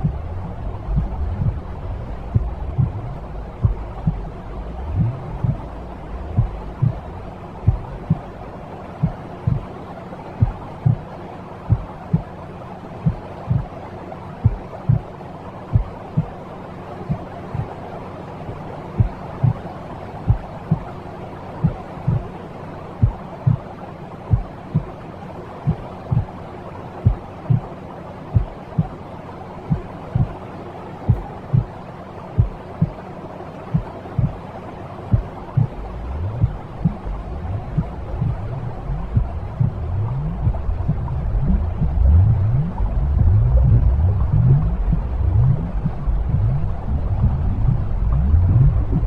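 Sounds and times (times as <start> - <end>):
slow heartbeat thumps: 0.0 - 8.4, 9.0 - 9.7, 10.4 - 11.0, 11.7 - 12.3, 13.0 - 13.7, 14.4 - 15.1, 15.7 - 16.3, 19.0 - 19.6, 20.3 - 20.9, 23.0 - 23.6, 27.0 - 27.7, 28.4 - 29.0, 31.1 - 31.8, 32.4 - 33.0, 35.1 - 49.0
white noise hiss: 0.0 - 49.0.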